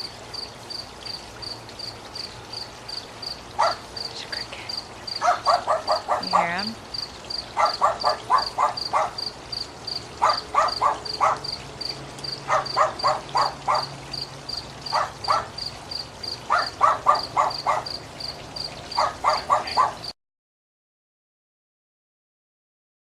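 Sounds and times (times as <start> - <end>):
frogs croaking: 0.0 - 20.1
cricket chirping: 0.4 - 4.1, 7.0 - 19.9.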